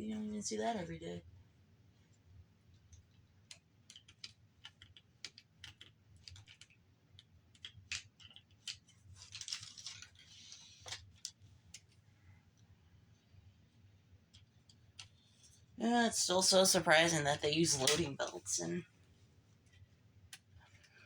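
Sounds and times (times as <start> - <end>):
small plastic parts clicking: 2.7 - 12.0.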